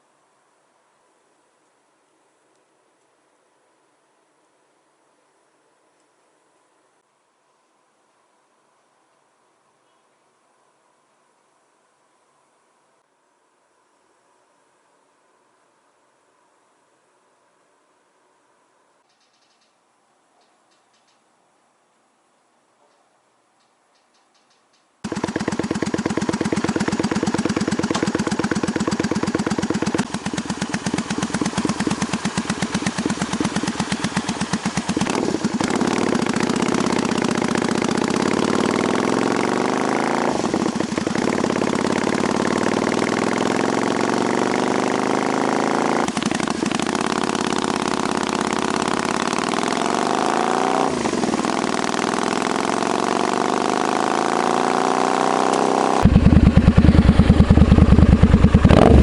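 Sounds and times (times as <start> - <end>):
motorcycle engine idling: 25.0 - 50.2, 51.0 - 59.0.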